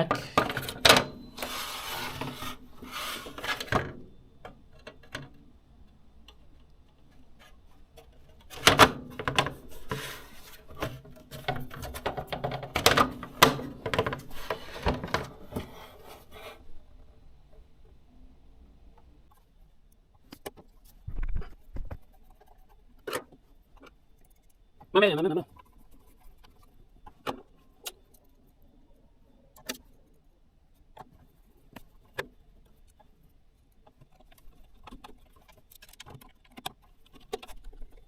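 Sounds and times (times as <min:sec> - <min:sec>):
case scraping: 0:00.0 - 0:05.4, 0:07.4 - 0:16.8.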